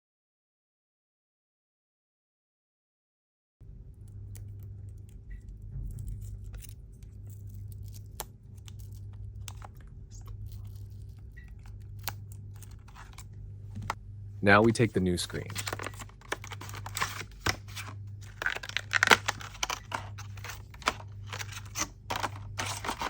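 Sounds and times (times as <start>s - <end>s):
steady low hum: 3.6s - 23.0s
small tools clicking and tapping: 18.3s - 23.0s.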